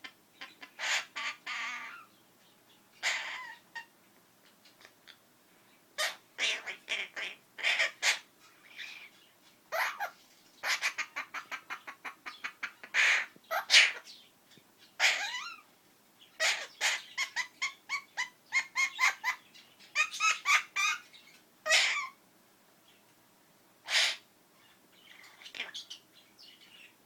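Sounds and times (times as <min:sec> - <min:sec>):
parrot chattering calls: 0:00.4 - 0:02.1, 0:03.0 - 0:03.9, 0:06.0 - 0:09.1, 0:09.7 - 0:14.2, 0:15.0 - 0:15.7, 0:16.4 - 0:22.2, 0:23.9 - 0:24.3, 0:25.0 - 0:26.0.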